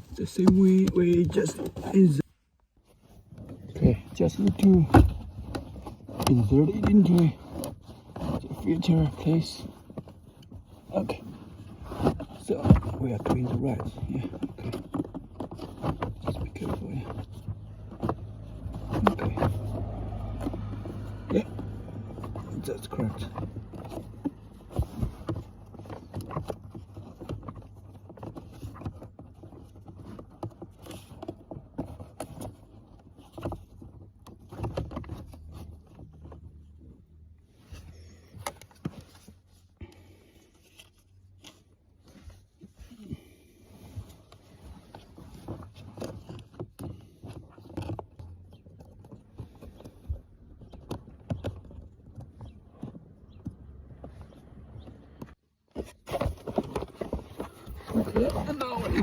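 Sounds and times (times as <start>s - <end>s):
plastic parts clicking and scraping: 0.0s - 59.0s
rustling handling noise: 0.0s - 59.0s
hands handling plastic housing: 37.6s - 59.0s.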